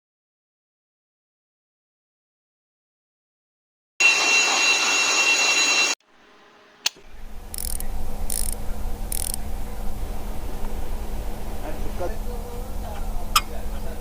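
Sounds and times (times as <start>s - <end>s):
loud steady machine whine: 4.0s - 14.0s
low steady hum: 6.0s - 14.0s
single click: 6.8s - 9.4s.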